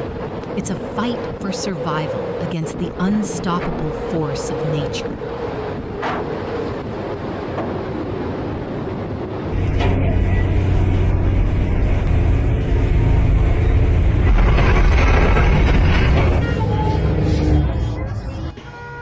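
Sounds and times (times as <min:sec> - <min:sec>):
boat engine drone: 0:00.0 - 0:19.0
rushing wind: 0:05.0 - 0:16.4.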